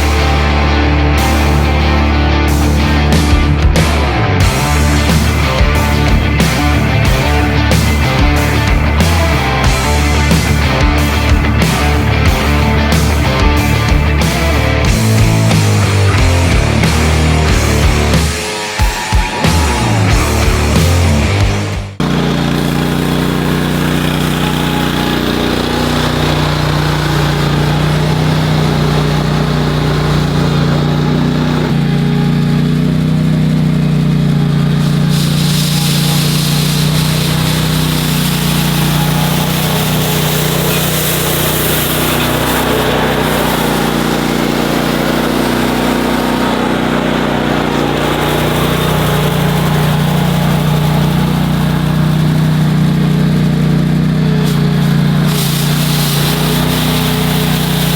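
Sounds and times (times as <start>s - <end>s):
snow machine engine running: 0.0s - 57.9s
hissing broom sweep: 34.1s - 53.6s, 54.4s - 57.9s.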